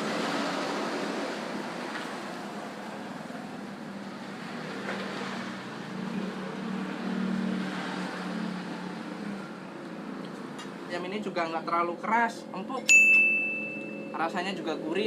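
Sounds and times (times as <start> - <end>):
vehicle engine hum passing: 0.0 - 11.3
road traffic rushing: 0.0 - 12.5.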